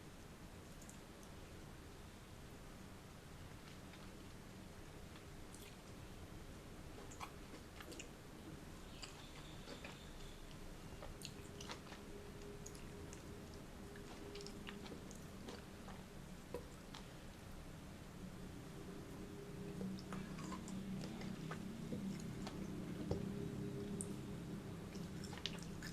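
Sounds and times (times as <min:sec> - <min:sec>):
chewing fruit: 0:06.9 - 0:08.2, 0:08.8 - 0:17.3, 0:19.0 - 0:25.9.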